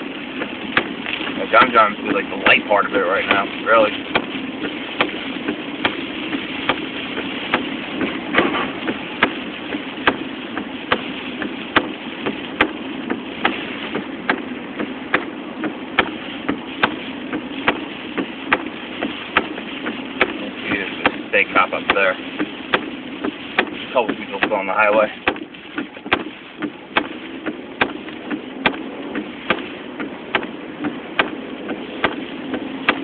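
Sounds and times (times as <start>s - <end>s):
car engine and road noise: 0.0s - 33.0s.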